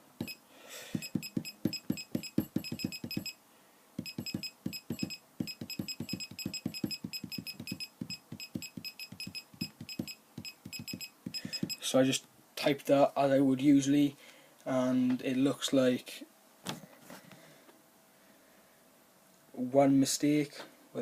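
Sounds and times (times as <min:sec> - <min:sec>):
electronic keyboard key-click tone: 0:00.2 - 0:00.4, 0:01.0 - 0:03.4, 0:04.0 - 0:11.8.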